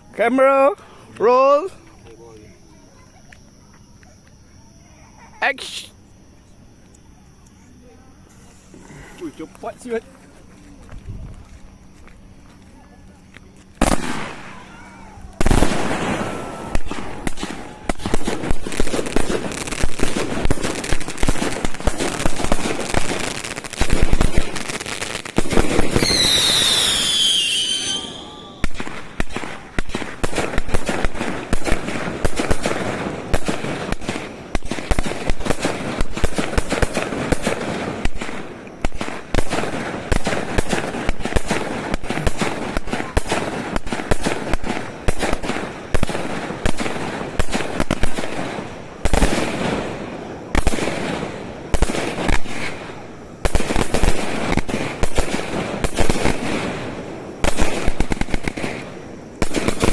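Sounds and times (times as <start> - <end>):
fireworks bangs and crackling: 7.5 - 59.9.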